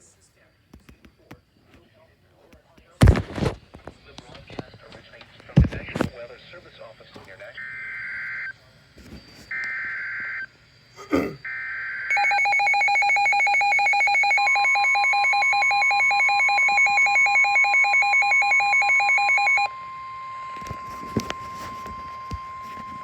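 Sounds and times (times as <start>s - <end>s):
two-tone electronic alarm trilling: 11.4s - 23.0s.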